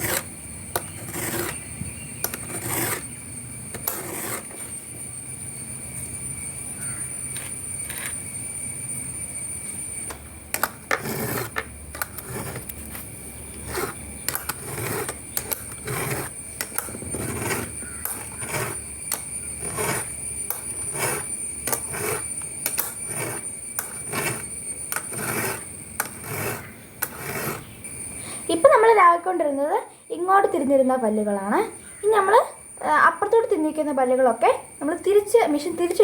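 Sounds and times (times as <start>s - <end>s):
file rasping on chainsaw chain: 0.0s - 4.6s, 10.6s - 13.0s, 13.6s - 27.7s.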